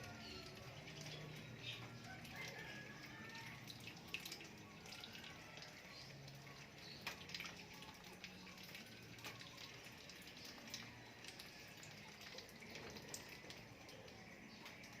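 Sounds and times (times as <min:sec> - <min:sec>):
light dripping ticks: 0:00.0 - 0:15.0.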